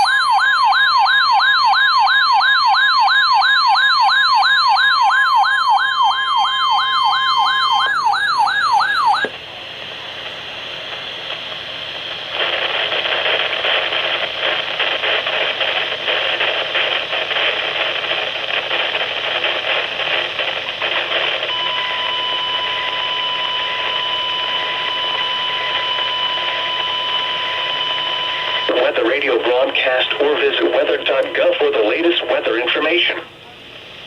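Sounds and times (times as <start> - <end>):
steady high tone: 0.0 - 9.4, 21.5 - 33.2
radio static crackling: 7.2 - 34.0.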